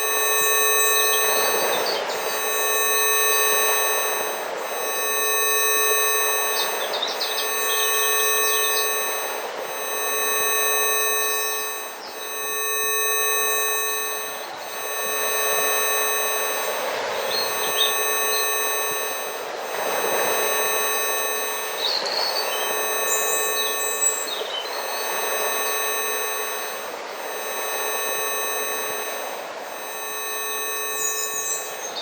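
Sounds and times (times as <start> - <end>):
steady pure tones: 0.0 - 32.0
birds chirping: 1.0 - 2.4, 6.0 - 9.2, 17.2 - 19.0, 21.6 - 26.2, 31.0 - 32.0.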